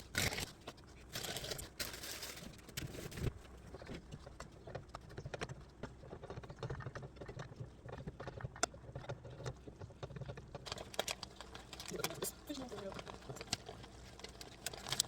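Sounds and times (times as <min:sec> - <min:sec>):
sauce simmering and popping: 0:03.6 - 0:15.0.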